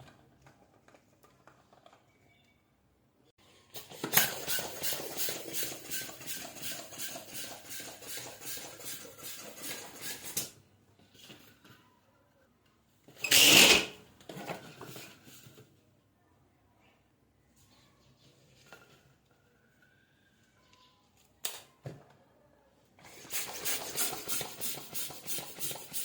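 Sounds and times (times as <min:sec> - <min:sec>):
rubber balloon rhythmic strokes: 0:03.7 - 0:10.5, 0:23.0 - 0:26.0.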